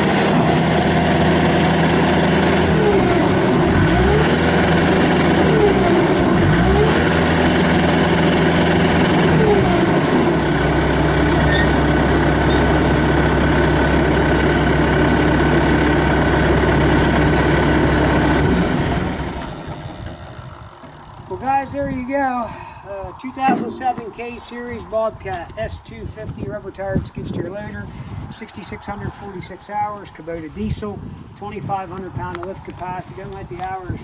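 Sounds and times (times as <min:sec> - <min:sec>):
diesel engine running with whine: 0:00.0 - 0:21.5.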